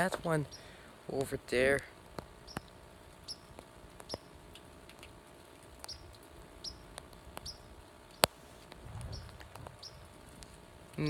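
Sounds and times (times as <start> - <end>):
small bird chirping: 2.4 - 4.4, 5.8 - 10.2.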